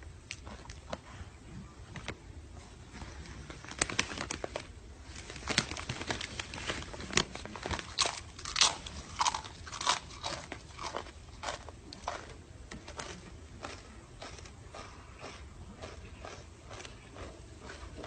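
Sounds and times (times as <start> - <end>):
deer crunching chips: 3.1 - 18.0.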